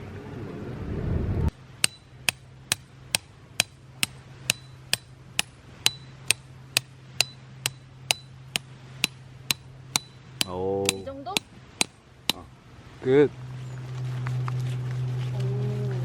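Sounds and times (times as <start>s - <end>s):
tent peg hammered into ground: 1.8s - 12.5s.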